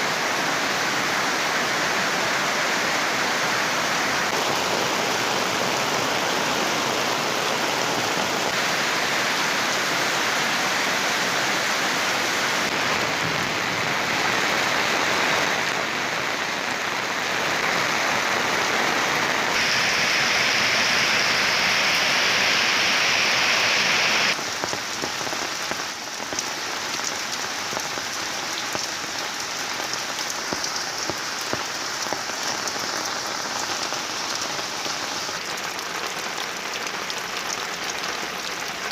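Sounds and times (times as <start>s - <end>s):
heavy rain pouring: 0.0s - 38.9s
individual raindrop ticks: 29.9s - 32.4s.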